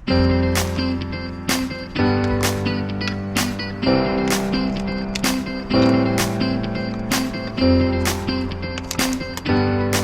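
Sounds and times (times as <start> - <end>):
background music with drum beat: 3.4 - 10.0.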